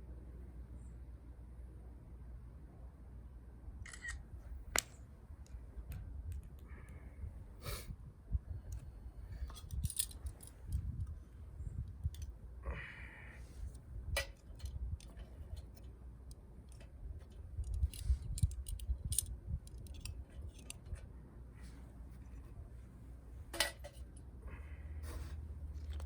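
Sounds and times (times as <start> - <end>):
wind rumble on microphone: 4.1 - 15.8, 16.8 - 21.2.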